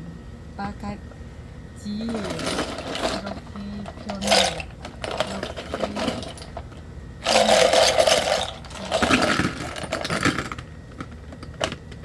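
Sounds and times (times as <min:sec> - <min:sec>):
plastic scoop scraping and rattling: 0:02.1 - 0:10.6.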